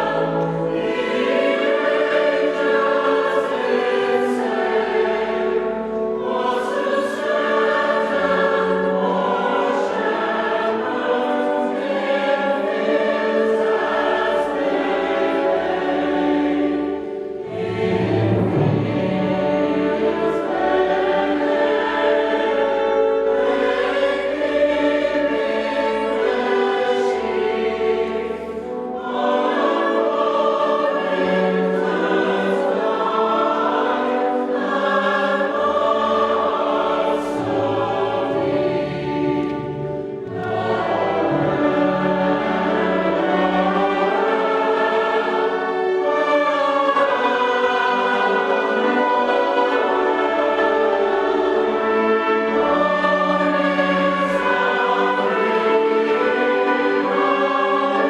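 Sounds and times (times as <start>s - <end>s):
choir singing in harmony: 0.0s - 58.0s.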